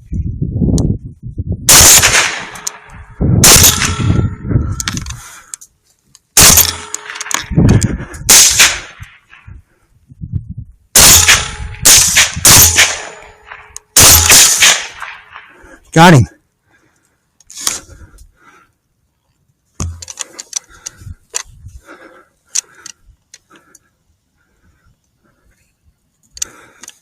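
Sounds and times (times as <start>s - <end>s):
rifle shots: 1.7s - 4.2s, 6.4s - 7.5s, 8.3s - 9.3s, 11.0s - 15.5s.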